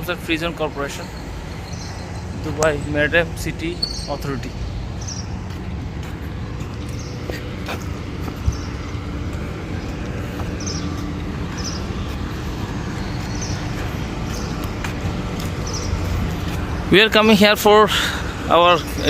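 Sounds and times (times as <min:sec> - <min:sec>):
vehicle running: 0:00.0 - 0:19.0.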